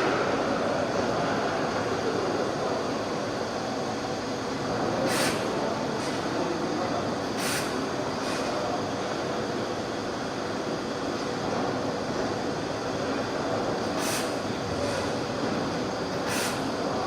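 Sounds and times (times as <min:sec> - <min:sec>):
laser cutting machine running: 0:00.0 - 0:17.0
short hisses: 0:07.4 - 0:08.5, 0:16.2 - 0:16.7.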